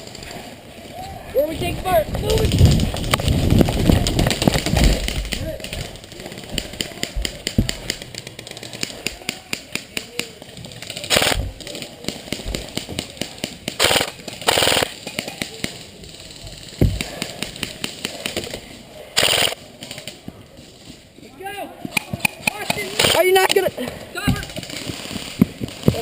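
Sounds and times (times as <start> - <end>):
airsoft gun shots: 13.8 - 14.9.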